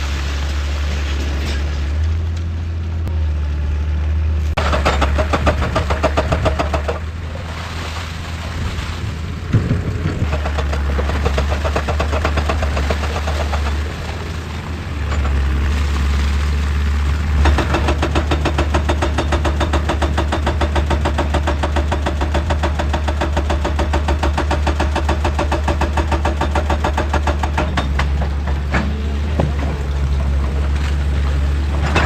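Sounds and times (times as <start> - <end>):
diesel machine running: 0.0 - 32.0
hydraulic breaker hammering rock: 4.6 - 7.2, 9.5 - 14.0, 17.3 - 30.8.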